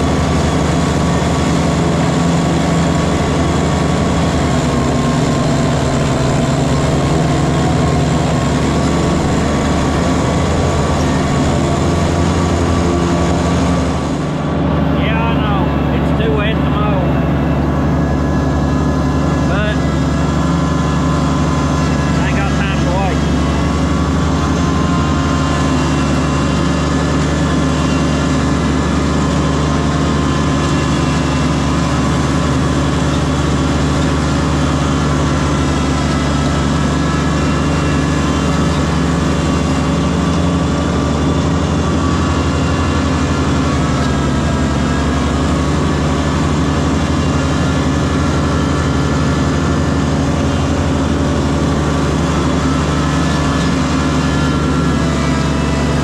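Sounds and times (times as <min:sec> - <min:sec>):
tractor diesel engine running: 0:00.0 - 0:56.0.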